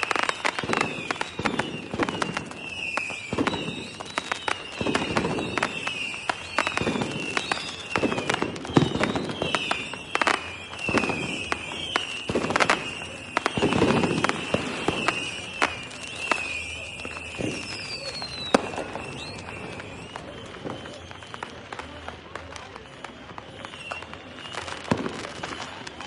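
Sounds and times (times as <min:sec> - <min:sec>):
high wavering whistle: 0:00.0 - 0:21.7
falling whistle: 0:00.0 - 0:26.0
firecrackers bangs and crackles: 0:00.0 - 0:26.0
deep firework booms: 0:00.6 - 0:21.0, 0:24.8 - 0:25.6.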